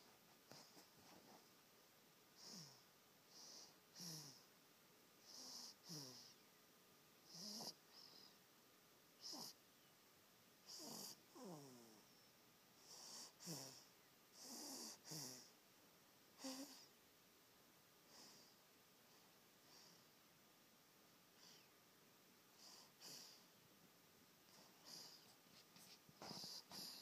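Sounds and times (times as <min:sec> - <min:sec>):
baby snoring: 0:02.4 - 0:02.8, 0:03.4 - 0:04.4, 0:05.2 - 0:06.4, 0:07.3 - 0:08.3, 0:09.2 - 0:09.6, 0:10.7 - 0:12.1, 0:12.8 - 0:15.5, 0:16.4 - 0:16.9, 0:24.6 - 0:25.3, 0:26.2 - 0:27.0.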